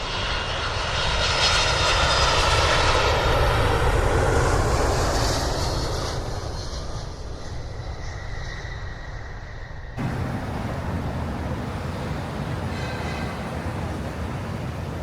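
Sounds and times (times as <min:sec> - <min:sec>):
engine rumble passing by: 0:10.0 - 0:15.0.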